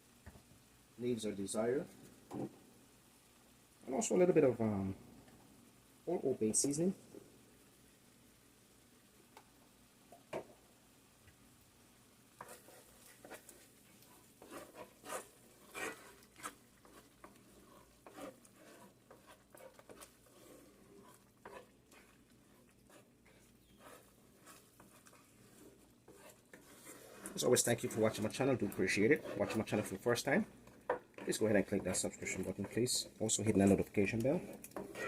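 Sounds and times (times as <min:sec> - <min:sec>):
utensil stirring sauce in pan: 0:11.3 - 0:35.0.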